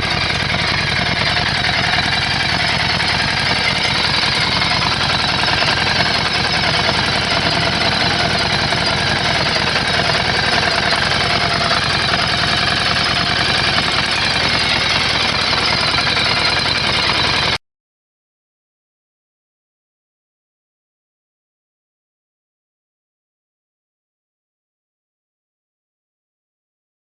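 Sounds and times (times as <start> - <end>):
motorcycle engine idling: 0.0 - 17.6.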